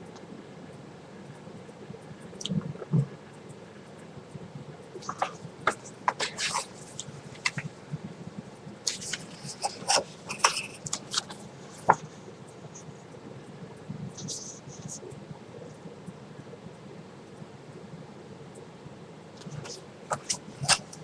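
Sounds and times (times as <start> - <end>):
paper pages rustling and turning: 5.0 - 7.7, 8.9 - 12.2, 19.5 - 21.0.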